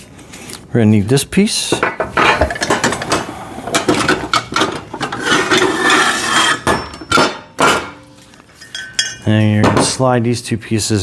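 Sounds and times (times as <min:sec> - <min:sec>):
metal parts clinking and knocking: 0:01.8 - 0:09.3.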